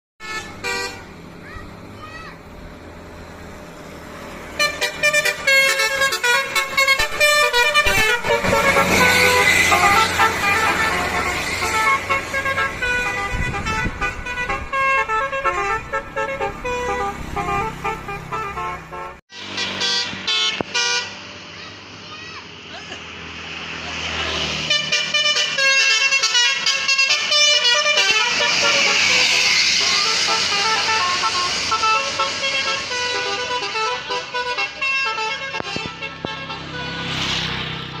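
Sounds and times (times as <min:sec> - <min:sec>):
bus musical horn melody: 0:00.2 - 0:01.4, 0:04.4 - 0:21.4, 0:24.4 - 0:37.5
vehicle engine running: 0:00.4 - 0:25.8.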